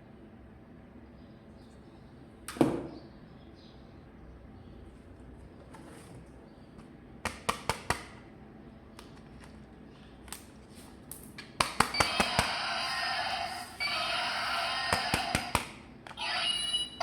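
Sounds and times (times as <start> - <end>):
electronic toy buzzing tones: 12.0 - 15.6, 16.2 - 17.0.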